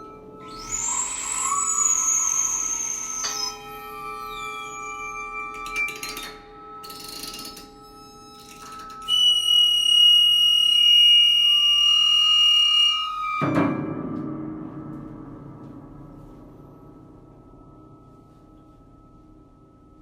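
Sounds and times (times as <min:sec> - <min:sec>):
high piercing held tone: 0:00.0 - 0:13.6.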